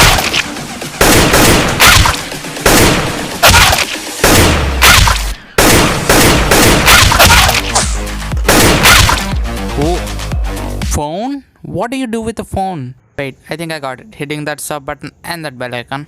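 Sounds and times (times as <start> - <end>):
bursts of rapid gunfire: 0.0 - 7.8.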